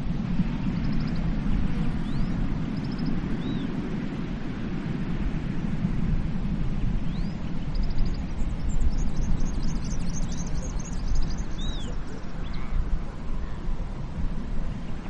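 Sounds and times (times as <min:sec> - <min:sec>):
sea waves rumbling: 0:00.0 - 0:15.0
small birds chirping: 0:00.7 - 0:03.8, 0:07.0 - 0:13.7.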